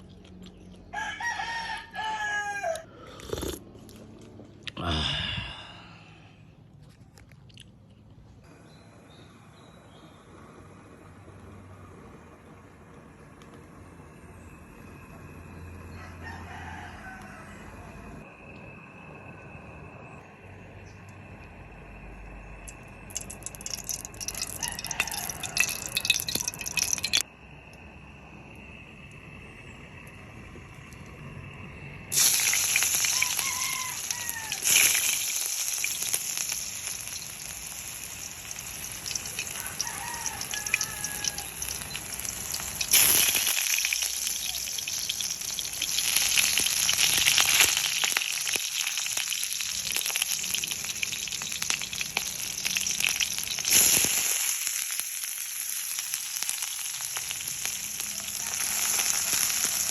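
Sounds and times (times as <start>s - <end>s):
rooster crowing: 0.9s - 3.4s, 15.0s - 18.3s, 24.1s - 26.7s, 31.4s - 35.2s, 38.5s - 42.9s, 57.8s - 59.9s
food sizzling in frying: 22.6s - 27.3s, 32.1s - 59.9s.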